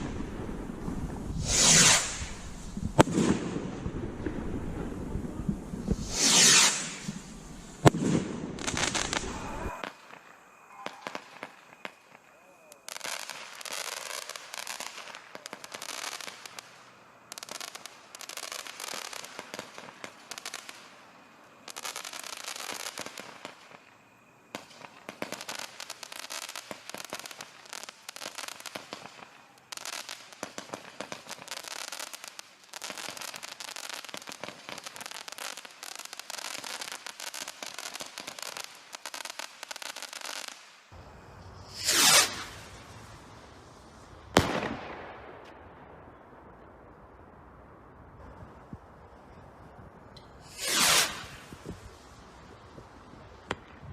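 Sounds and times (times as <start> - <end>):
loud firework blast: 0.0 - 10.2, 41.0 - 48.9, 50.3 - 53.9
fireworks popping and crackling: 0.0 - 53.9.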